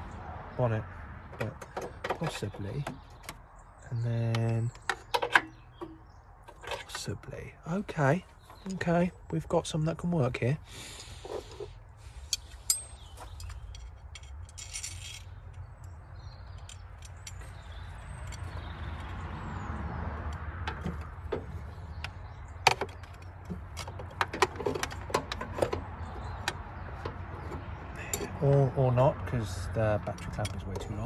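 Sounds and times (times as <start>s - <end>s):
metal clamp clinking and rattling: 4.4s - 7.1s, 12.3s - 19.2s.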